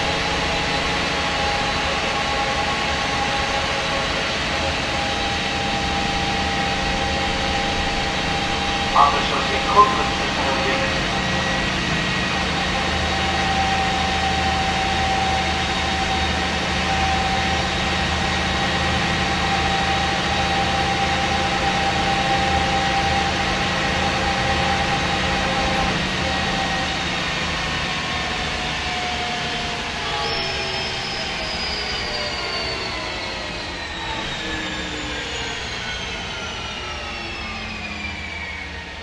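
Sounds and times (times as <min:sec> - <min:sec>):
drivetrain whine: 0:00.0 - 0:28.8
bus engine rumble: 0:04.9 - 0:12.9.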